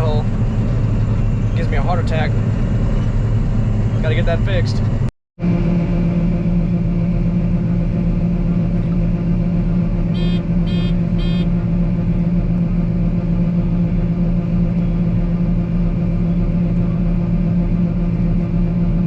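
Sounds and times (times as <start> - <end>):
combine harvester droning: 0.0 - 19.0
short electronic beeps: 10.2 - 11.5.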